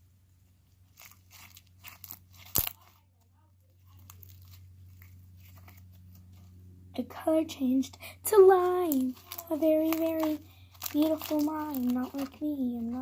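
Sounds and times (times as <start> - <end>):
low steady hum: 0.0 - 13.0
slime crackling and clicking: 1.0 - 3.0, 8.8 - 12.3
slime popping: 1.0 - 3.0.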